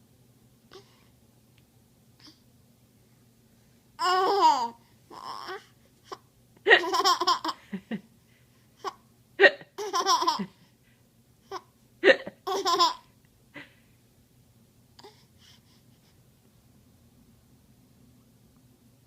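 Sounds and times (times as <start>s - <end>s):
baby giggling: 4.0s - 7.7s, 8.8s - 10.6s, 11.5s - 13.1s.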